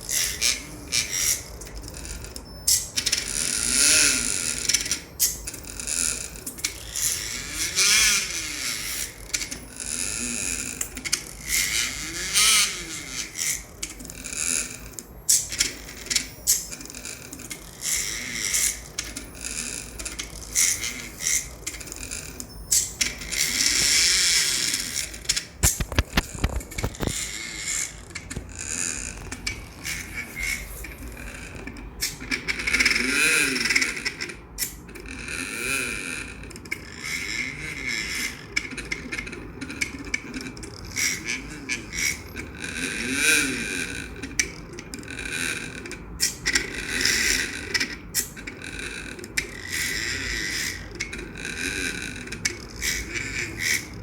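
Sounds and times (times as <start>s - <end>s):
stepper motors whining: 0.0s - 54.0s
clicks and scratchy noise: 5.4s - 33.0s.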